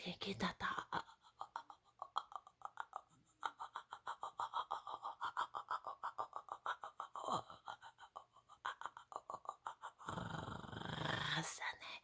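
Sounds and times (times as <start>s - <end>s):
woman whispering rapid syllables: 0.0s - 1.1s, 11.2s - 12.0s.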